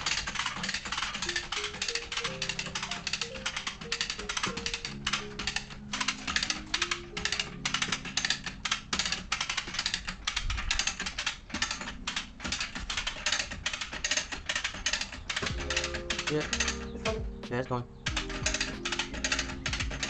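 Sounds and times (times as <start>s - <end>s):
fast clicking beat: 0.0s - 20.0s
low synth notes: 15.4s - 20.0s.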